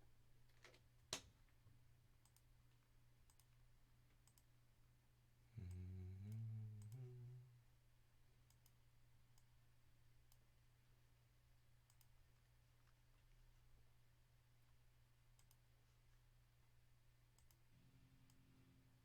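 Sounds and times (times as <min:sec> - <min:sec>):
low steady hum: 0:01.9 - 0:19.0
faint clicks: 0:02.2 - 0:04.5, 0:05.6 - 0:07.1, 0:08.5 - 0:09.5, 0:11.9 - 0:13.4, 0:15.4 - 0:15.6, 0:17.4 - 0:18.4
low hum rising in pitch: 0:05.6 - 0:07.6.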